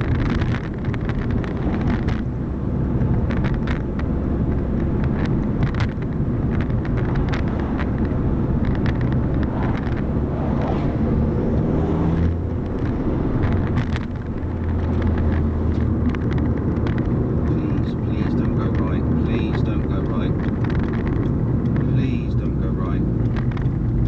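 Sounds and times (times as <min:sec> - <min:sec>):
car engine and road drone: 0:00.0 - 0:24.0.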